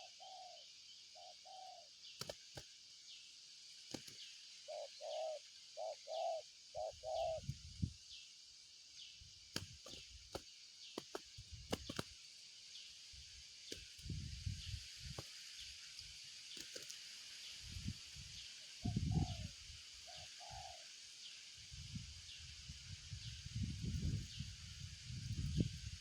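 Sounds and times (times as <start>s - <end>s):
dove cooing: 0.0s - 0.6s, 1.2s - 1.9s, 4.7s - 7.4s, 20.1s - 20.8s
faint chirp: 0.0s - 2.3s, 3.0s - 10.1s
steady high hiss: 0.0s - 26.0s.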